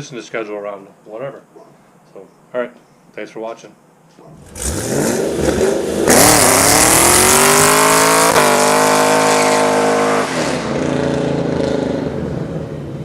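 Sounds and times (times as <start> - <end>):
vehicle engine accelerating hard: 4.4 - 13.0.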